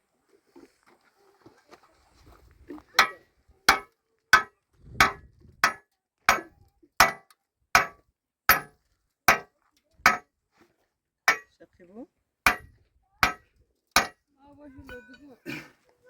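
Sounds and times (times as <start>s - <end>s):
hammer blows: 12.5s - 13.4s.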